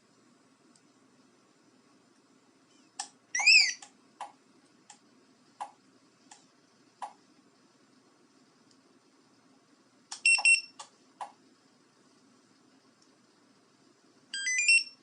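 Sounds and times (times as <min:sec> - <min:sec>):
key fob warbling chirp: 0:03.4 - 0:03.8.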